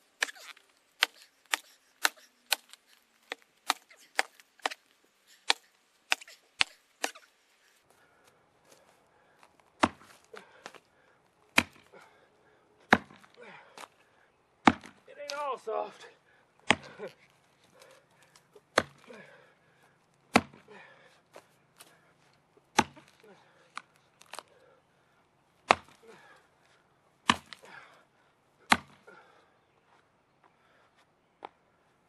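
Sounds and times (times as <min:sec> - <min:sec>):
axe chopping into tree trunk: 0:00.2 - 0:07.3, 0:09.8 - 0:10.8, 0:11.5 - 0:11.9, 0:12.9 - 0:13.4, 0:14.6 - 0:15.4, 0:16.6 - 0:17.2, 0:18.7 - 0:19.1, 0:20.3 - 0:20.7, 0:22.7 - 0:23.2, 0:25.6 - 0:26.0, 0:27.2 - 0:27.7, 0:28.7 - 0:29.0.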